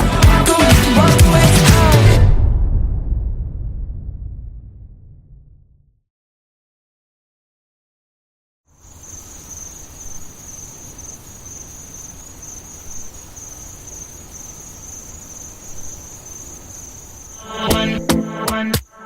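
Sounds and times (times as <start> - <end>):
crickets chirping: 8.7 - 19.0.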